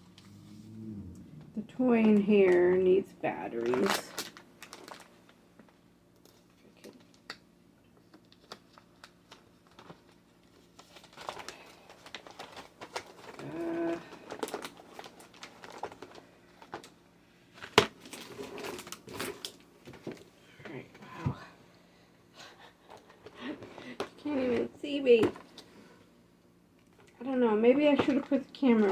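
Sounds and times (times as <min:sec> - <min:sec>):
short pitched sound: 0:00.1 - 0:01.7
clicks and rustling of items: 0:01.9 - 0:07.4, 0:08.0 - 0:17.0, 0:17.6 - 0:21.3, 0:26.8 - 0:28.9.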